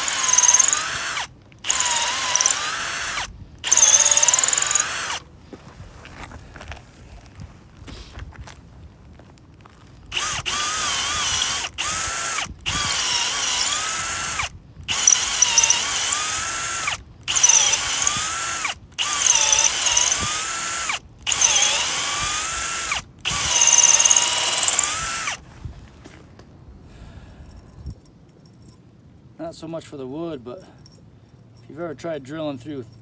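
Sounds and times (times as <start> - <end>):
power drill drilling into metal: 0.0 - 5.2, 10.1 - 25.4.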